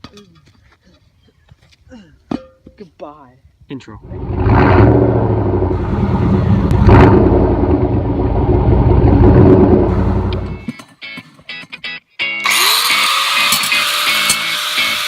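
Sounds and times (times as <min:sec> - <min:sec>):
pickup engine revving loudly: 0:04.0 - 0:10.6.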